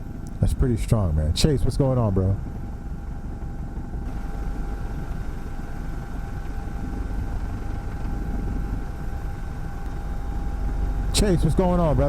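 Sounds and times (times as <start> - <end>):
engine low rumble: 0.0 - 12.0
faint constant whine: 0.0 - 12.0.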